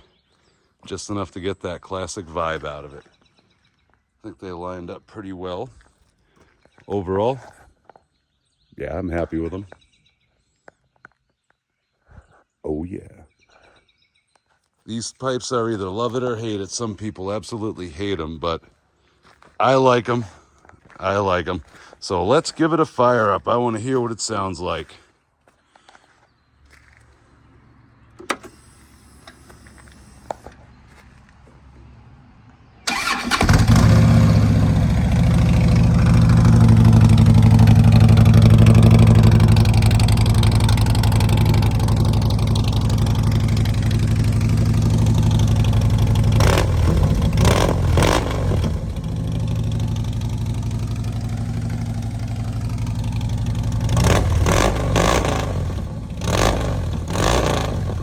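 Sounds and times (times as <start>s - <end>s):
motorcycle engine idling and revving: 32.9s - 58.0s.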